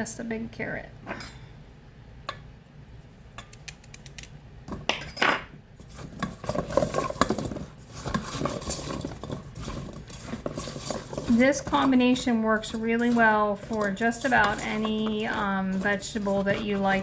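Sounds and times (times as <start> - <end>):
spatula tossing vegetables in dish: 5.6 - 17.0.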